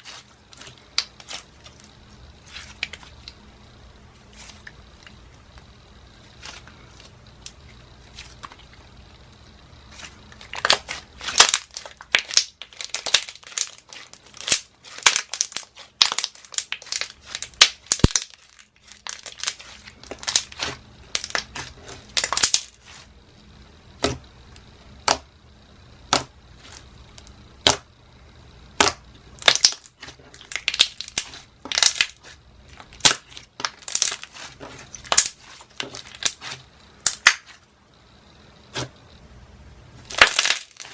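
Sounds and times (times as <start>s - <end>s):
slime popping and crackling: 9.9s - 23.0s, 28.8s - 37.6s, 40.0s - 40.9s.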